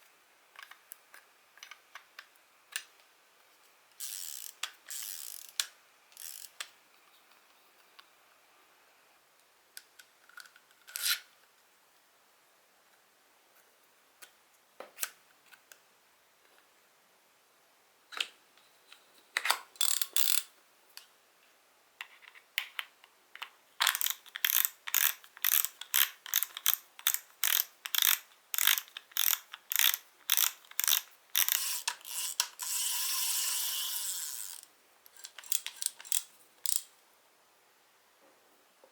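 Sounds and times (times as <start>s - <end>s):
fishing reel buzzing: 4.0s - 5.5s, 6.2s - 6.5s, 24.0s - 34.7s
fishing reel ratchet clicking: 4.0s - 5.6s, 6.2s - 6.6s, 19.8s - 20.5s, 23.8s - 36.9s.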